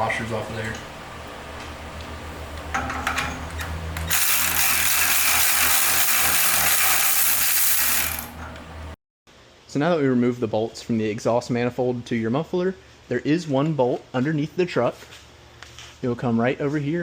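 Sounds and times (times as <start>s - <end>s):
electric ratchet spinning bolt: 4.0s - 8.6s.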